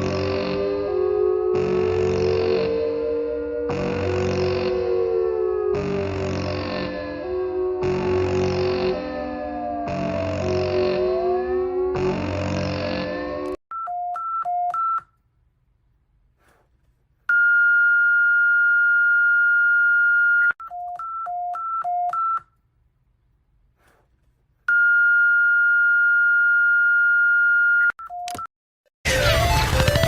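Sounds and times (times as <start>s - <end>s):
long steady high alarm tone: 0.1s - 13.6s.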